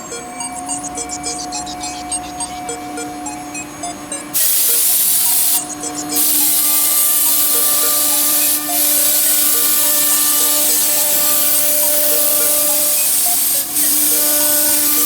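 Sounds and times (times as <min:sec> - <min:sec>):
music with held notes: 0:00.0 - 0:15.0
loud steady hiss: 0:04.3 - 0:05.6, 0:06.2 - 0:15.0.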